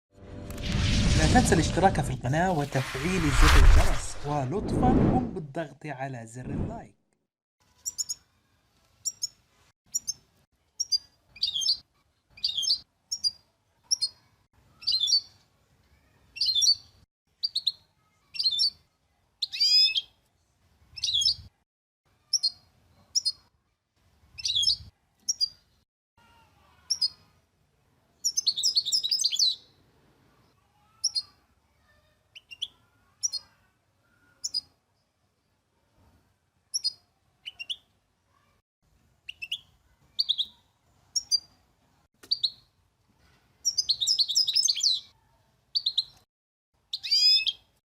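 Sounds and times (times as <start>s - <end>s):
small songbird chirping: 7.8s - 8.2s, 9.0s - 10.2s, 12.4s - 14.2s, 24.4s - 25.6s, 28.2s - 29.7s, 39.3s - 40.6s, 41.2s - 41.5s, 43.6s - 45.1s, 45.7s - 46.2s.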